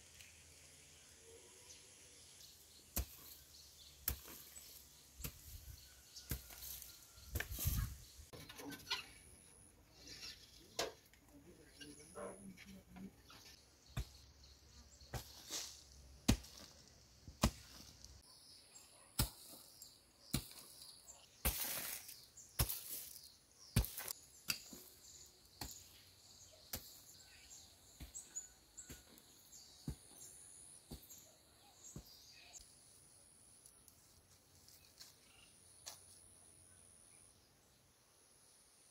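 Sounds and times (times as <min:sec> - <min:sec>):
hand tool chopping: 0:02.9 - 0:03.4, 0:04.0 - 0:07.7, 0:17.4 - 0:17.8
faint insects chirping: 0:22.0 - 0:38.9.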